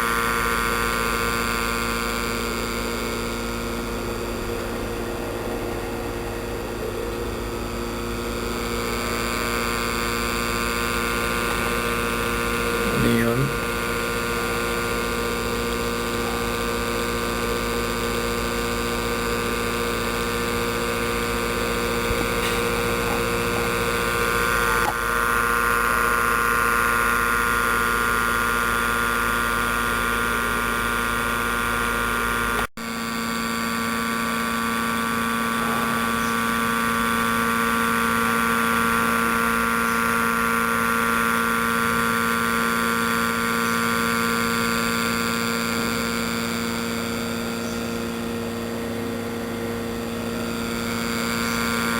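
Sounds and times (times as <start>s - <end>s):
steady electrical hum: 0.0s - 51.9s.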